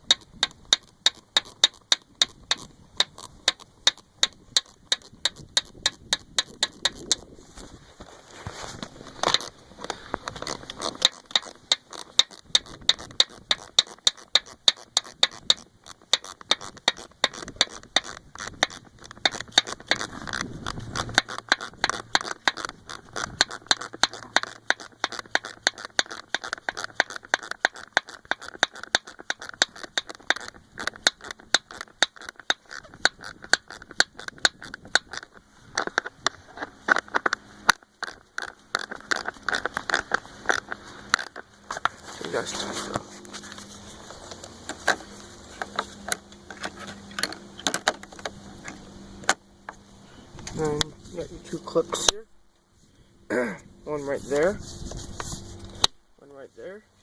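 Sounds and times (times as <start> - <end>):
ratchet wrench clicking: 0.0 - 7.2, 10.2 - 36.1.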